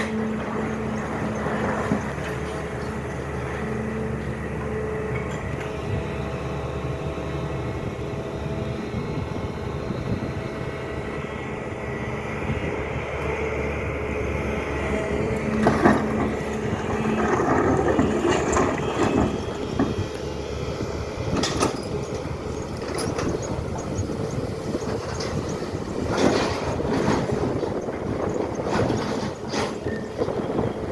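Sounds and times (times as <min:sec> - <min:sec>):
excavator diesel engine running: 0:00.0 - 0:30.9
metal clanks and knocks: 0:15.4 - 0:20.2, 0:21.2 - 0:30.8.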